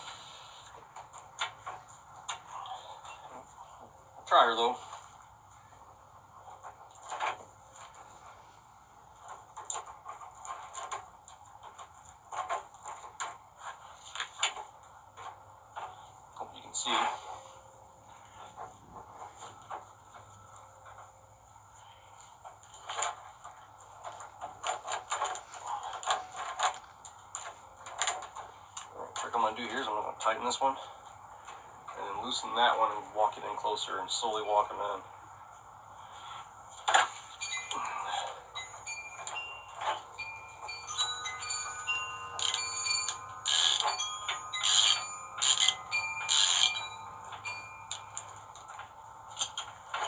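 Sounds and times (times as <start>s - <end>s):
metal clinking and ringing: 37.0s - 50.0s
tools clicking on metal hardware: 38.6s - 48.4s.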